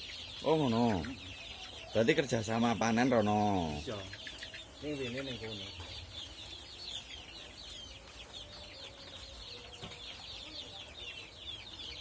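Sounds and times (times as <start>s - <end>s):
chickens cheeping: 0.0s - 12.0s.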